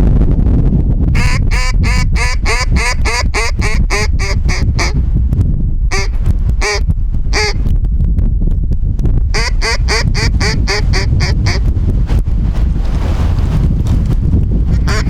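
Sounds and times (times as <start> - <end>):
low wind rumble: 0.0 - 15.0
duck quacking: 1.2 - 5.0, 5.9 - 7.6, 9.4 - 11.6, 14.7 - 15.0.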